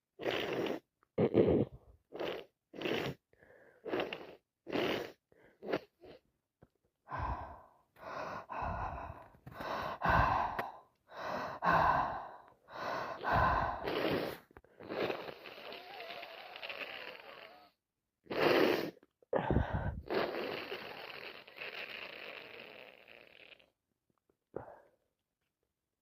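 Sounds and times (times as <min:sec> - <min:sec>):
gasping breaths: 0:07.1 - 0:14.9, 0:19.3 - 0:20.1.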